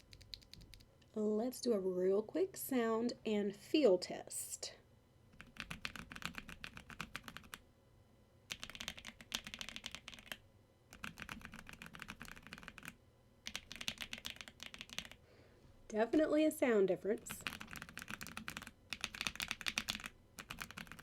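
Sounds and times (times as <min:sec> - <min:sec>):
mechanical keyboard typing: 0:00.0 - 0:00.8, 0:05.4 - 0:07.6, 0:08.5 - 0:15.2, 0:17.2 - 0:21.0.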